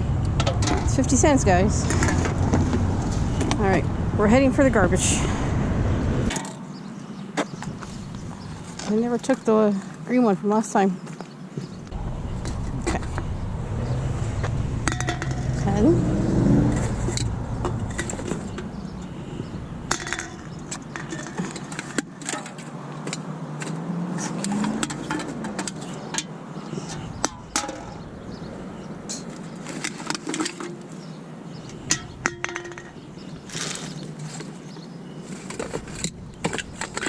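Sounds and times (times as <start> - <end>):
metal cans and clamps clinking: 14.8 - 15.7, 19.9 - 28.0, 29.1 - 30.8, 31.8 - 33.0.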